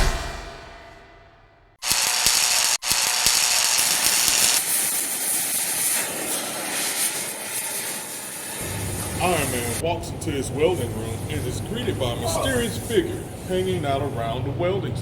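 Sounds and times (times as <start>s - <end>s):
welding arc hissing and crackling: 1.8s - 9.8s.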